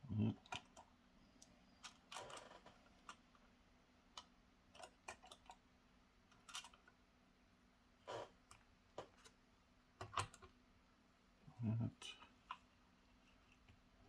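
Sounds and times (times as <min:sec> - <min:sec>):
faint low hum: 0:00.0 - 0:14.0.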